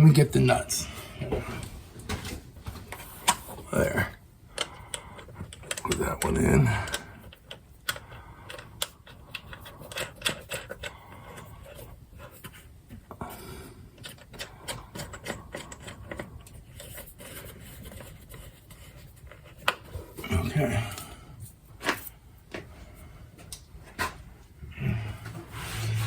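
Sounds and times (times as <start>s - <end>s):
small metal clicks and scraping: 4.6s - 12.6s.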